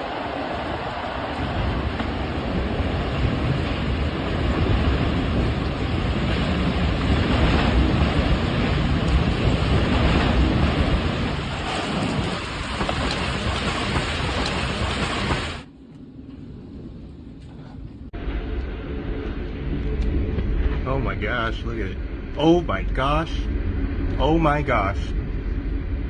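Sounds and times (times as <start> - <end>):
driving rain: 0.0 - 15.7
deep rumble: 0.0 - 26.0
tornado winds roaring: 0.0 - 26.0.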